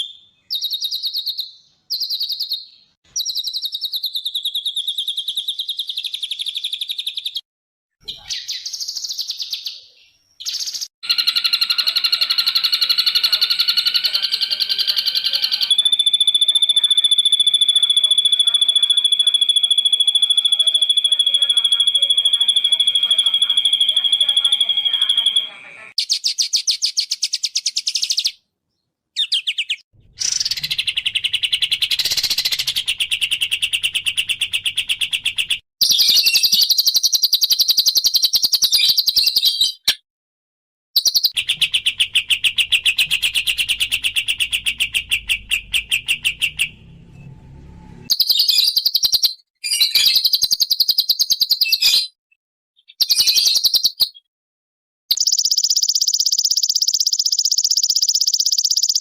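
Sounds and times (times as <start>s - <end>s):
songbirds chirping trills: 8.0s - 28.4s, 41.0s - 51.9s.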